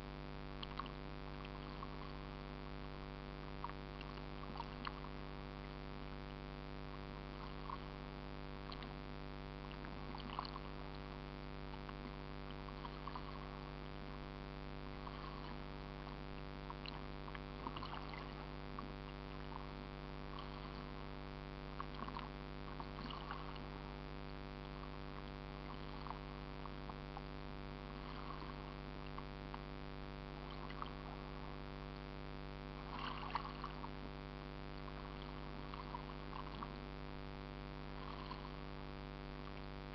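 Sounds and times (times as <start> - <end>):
boat engine running: 0.6 - 6.2, 6.8 - 9.0, 9.6 - 39.9
water splashing: 3.6 - 5.2, 9.7 - 11.1, 11.8 - 13.7, 14.9 - 21.2, 21.8 - 23.9, 24.6 - 27.3, 27.9 - 29.4, 30.4 - 31.6, 32.8 - 34.0, 34.8 - 36.8, 37.9 - 38.7.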